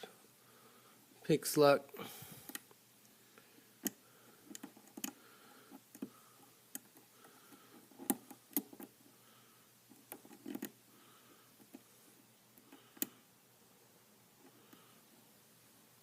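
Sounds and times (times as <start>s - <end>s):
lock pick clicking in a lock: 10.1s - 10.7s.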